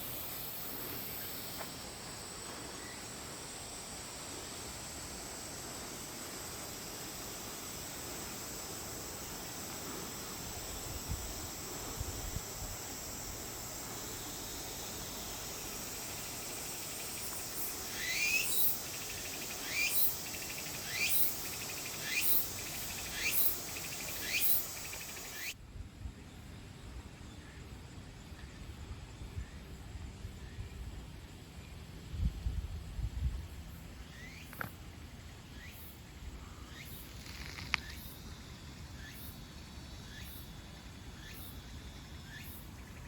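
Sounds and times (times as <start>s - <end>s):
steady hiss: 0.0s - 25.6s.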